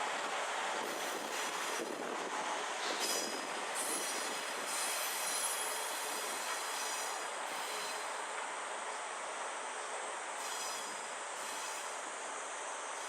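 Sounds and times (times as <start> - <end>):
train rolling on rails: 0.0 - 13.0
high wheel squeal: 3.0 - 8.2, 10.4 - 11.9.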